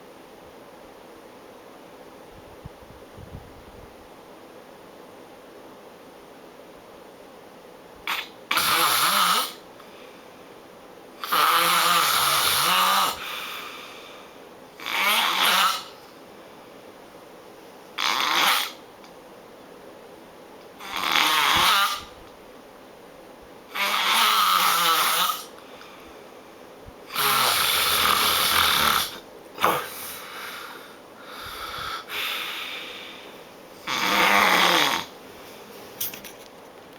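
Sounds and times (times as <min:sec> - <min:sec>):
person snoring loudly: 0:08.1 - 0:09.6, 0:11.2 - 0:13.9, 0:14.8 - 0:16.0, 0:18.0 - 0:18.8, 0:20.8 - 0:22.1, 0:23.7 - 0:25.5, 0:27.1 - 0:33.2, 0:33.8 - 0:35.2.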